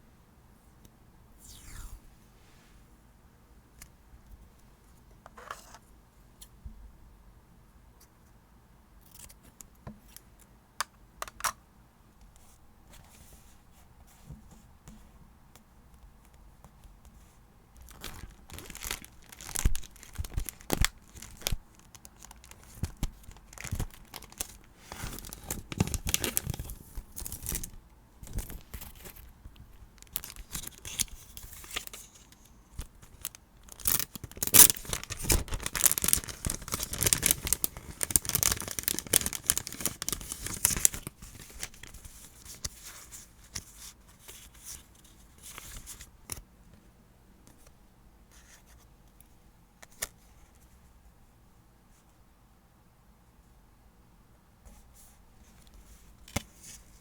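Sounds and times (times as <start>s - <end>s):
paper crinkling and tearing: 17.8s - 29.2s, 33.0s - 43.6s.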